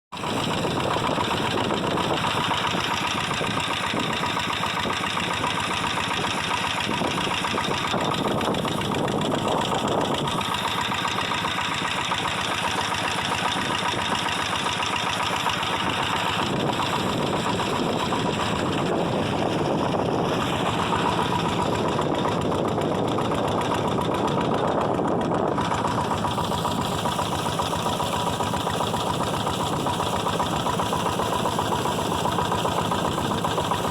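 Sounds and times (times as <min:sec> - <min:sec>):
engine chugging steadily: 0:00.1 - 0:33.9.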